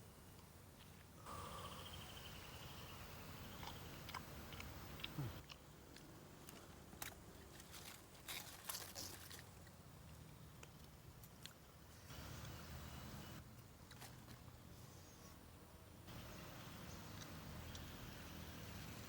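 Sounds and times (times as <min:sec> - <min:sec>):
person chewing food: 0:03.5 - 0:07.1.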